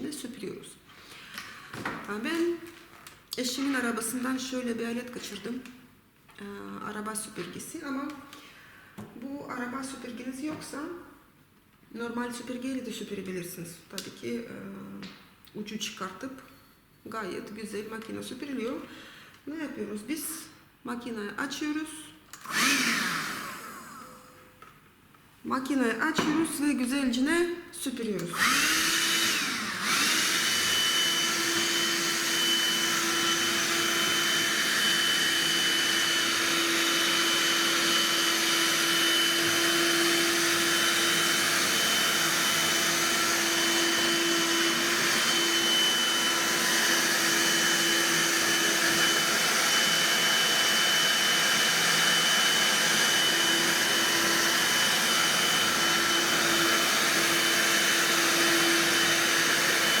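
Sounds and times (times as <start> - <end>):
handheld vacuum cleaner whining: 22.4 - 24.3, 28.3 - 60.0.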